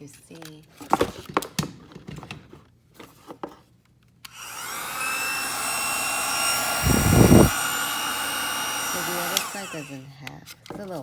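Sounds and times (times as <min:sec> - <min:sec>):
hair dryer blowing: 0:04.3 - 0:10.0.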